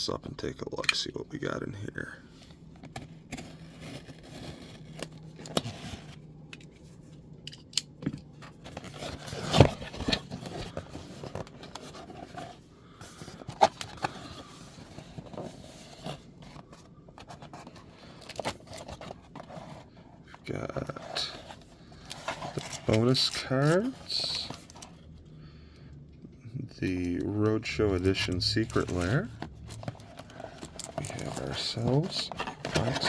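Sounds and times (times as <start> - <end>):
cardboard box being opened: 8.7 - 12.6, 28.6 - 33.0.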